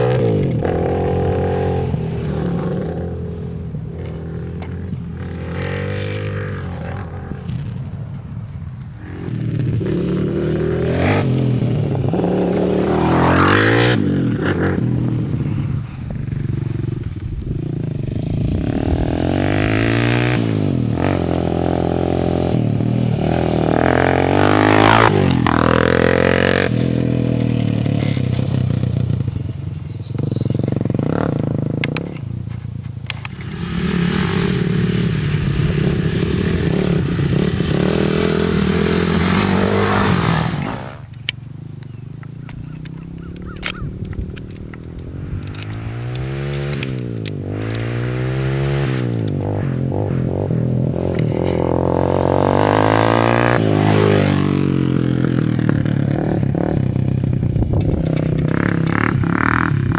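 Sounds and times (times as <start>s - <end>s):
atv engine revving: 0.0s - 59.9s.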